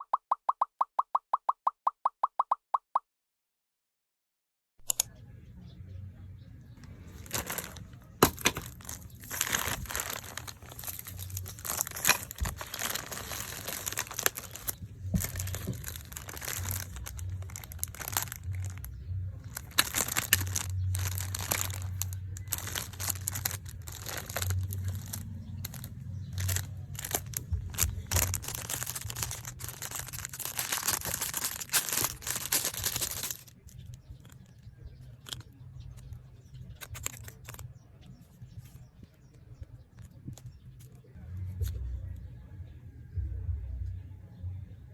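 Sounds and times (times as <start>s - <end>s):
packaging tearing: 6.8s - 34.4s, 36.8s - 37.6s
packaging crinkling and rustling: 6.8s - 34.6s, 35.2s - 36.1s, 36.7s - 37.6s.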